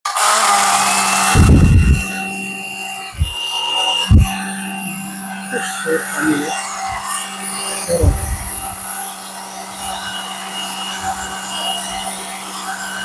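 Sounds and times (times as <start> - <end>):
hair dryer running: 0.1 - 13.0.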